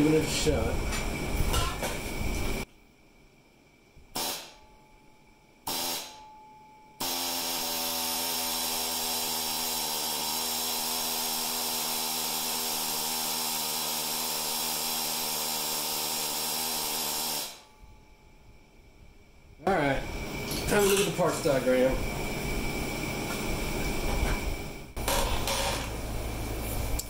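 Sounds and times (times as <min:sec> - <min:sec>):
pneumatic air chisel hammering: 0:04.2 - 0:04.6, 0:05.7 - 0:06.2, 0:07.0 - 0:17.6.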